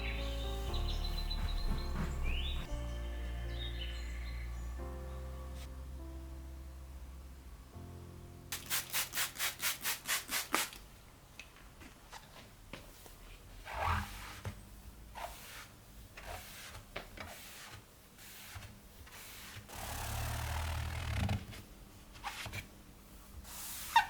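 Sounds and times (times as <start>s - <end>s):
quick rubbing strokes: 8.5s - 10.8s, 15.2s - 21.2s.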